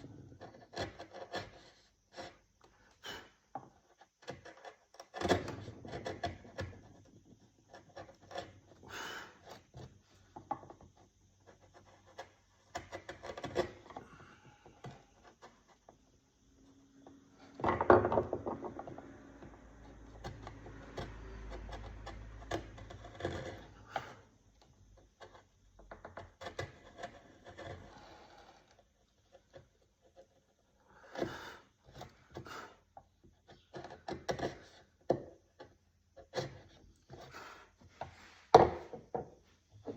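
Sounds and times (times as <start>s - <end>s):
tool scraping wood: 0.0s - 39.9s.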